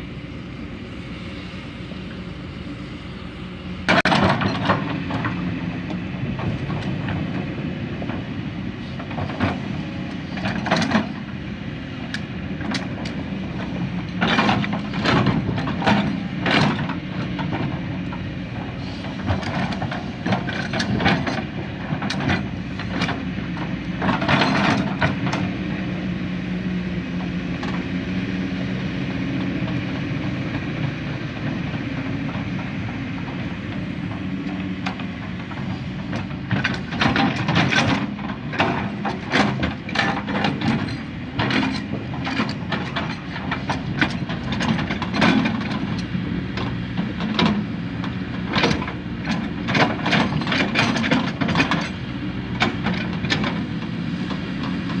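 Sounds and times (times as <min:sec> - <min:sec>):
diesel machinery engine running: 0:00.0 - 0:55.0
metal clanks and knocks: 0:03.9 - 0:08.3, 0:09.0 - 0:11.3, 0:12.1 - 0:25.5, 0:32.3 - 0:55.0.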